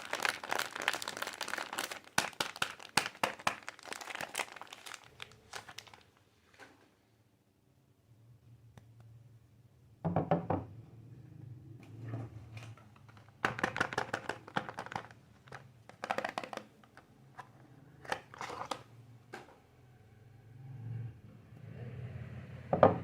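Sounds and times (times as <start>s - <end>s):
wrapper crinkling and tearing: 0.0s - 6.2s, 13.1s - 16.7s.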